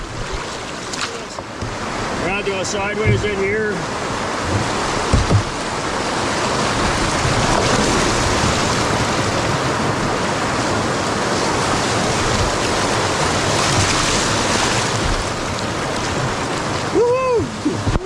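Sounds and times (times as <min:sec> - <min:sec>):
whitewater rapids rushing: 0:00.0 - 0:18.0
low thumps: 0:02.9 - 0:03.6, 0:04.3 - 0:06.0, 0:15.0 - 0:16.5.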